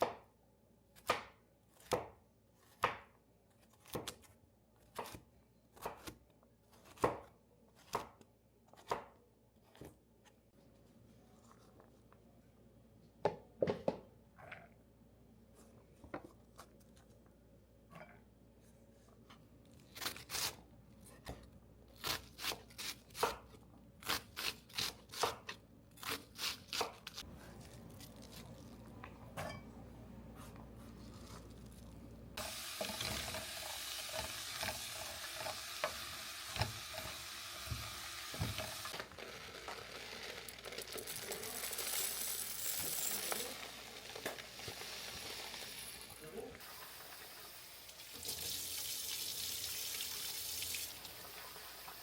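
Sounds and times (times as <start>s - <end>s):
food sizzling in a pan: 32.4s - 52.0s.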